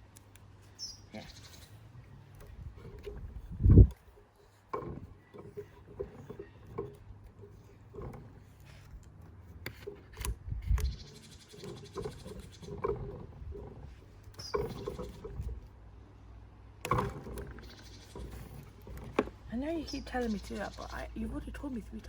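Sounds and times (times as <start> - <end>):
objects knocking and tapping: 2.4 - 15.7, 16.8 - 19.5.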